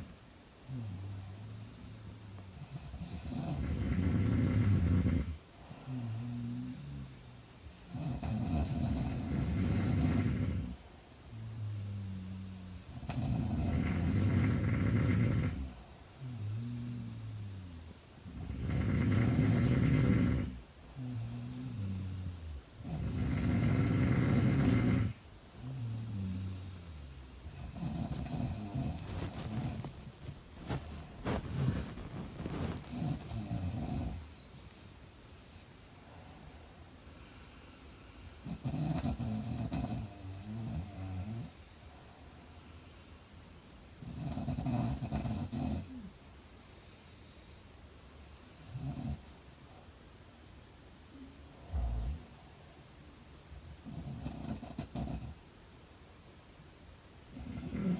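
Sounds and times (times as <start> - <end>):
woman snoring: 2.6 - 7.0, 7.9 - 10.8, 11.6 - 15.7, 18.3 - 26.9, 27.5 - 34.2, 57.3 - 57.9.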